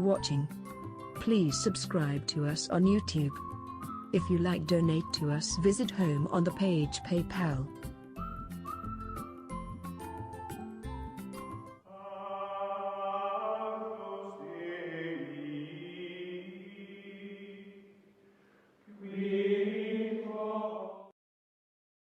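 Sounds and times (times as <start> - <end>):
long held chanting voices: 11.9 - 18.0, 18.9 - 21.1.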